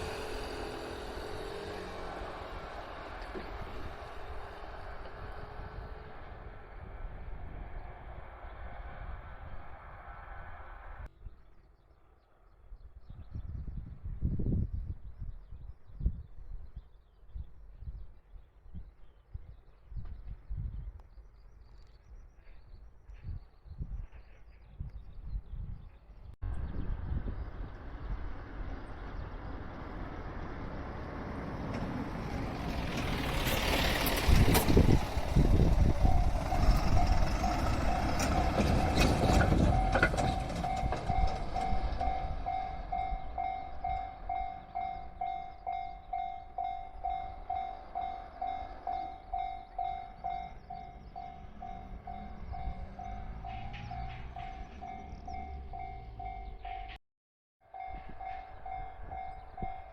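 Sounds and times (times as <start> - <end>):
train wheels on rails: 0.0 - 10.9, 27.7 - 57.0
level crossing warning bell: 35.6 - 57.0, 57.7 - 59.9.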